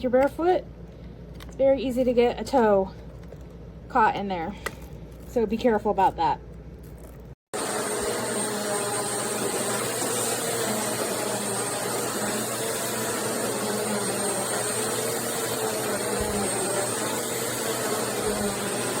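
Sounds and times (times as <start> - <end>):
vacuum cleaner running: 7.5 - 19.0.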